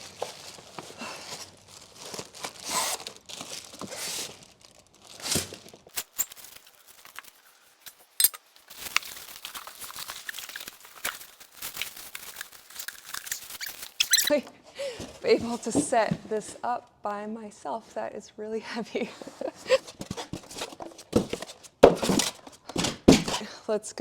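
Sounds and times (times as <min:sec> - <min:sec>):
wrapping crinkling and rustling: 0:00.0 - 0:14.4.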